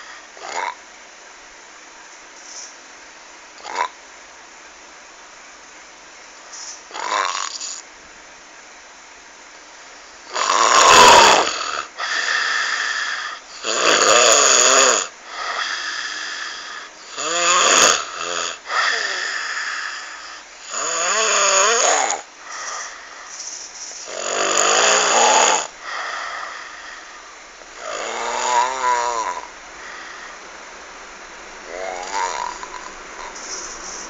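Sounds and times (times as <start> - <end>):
loud rasping snores: 0.0 - 0.8, 3.6 - 3.9, 6.9 - 7.8, 10.3 - 23.4, 24.0 - 27.1, 27.8 - 30.3, 31.6 - 34.0
soft breathing: 22.4 - 24.1, 25.7 - 27.5, 29.4 - 30.6, 32.5 - 34.0.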